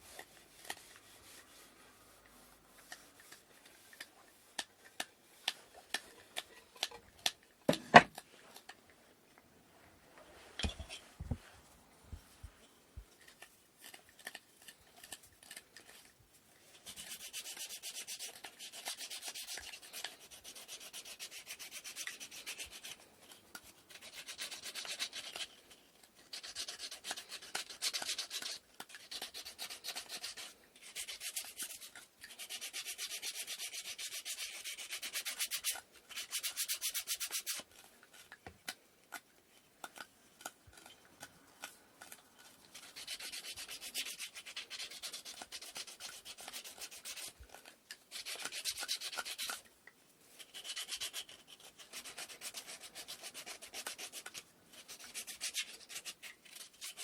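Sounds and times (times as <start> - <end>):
sandpaper rubbing on wood: 0.0 - 3.9, 16.9 - 23.0, 26.3 - 37.6, 42.7 - 47.4, 48.1 - 49.6, 50.4 - 57.0.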